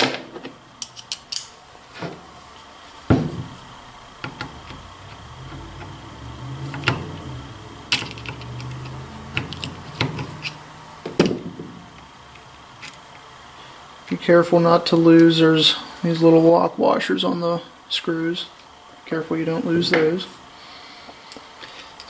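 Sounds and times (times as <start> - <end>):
low steady hum: 0.0 - 16.4.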